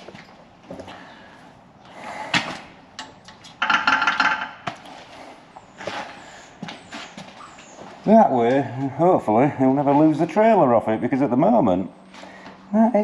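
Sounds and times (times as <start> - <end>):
rattling clatter of hard objects: 2.3 - 4.8.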